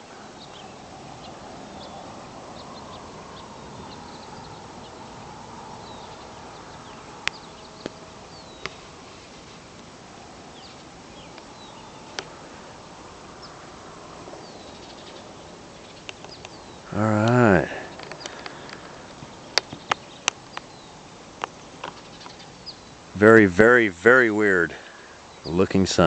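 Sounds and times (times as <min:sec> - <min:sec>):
faint steady drone: 0:00.0 - 0:26.0
small birds chirping: 0:00.0 - 0:26.0
sharp clicks: 0:16.0 - 0:16.6, 0:17.2 - 0:20.7.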